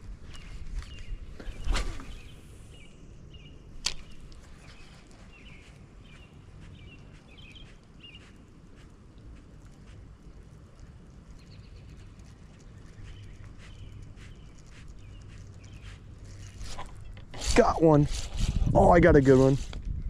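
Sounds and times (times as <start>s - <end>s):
fishing rod cast whoosh: 1.4s - 2.7s.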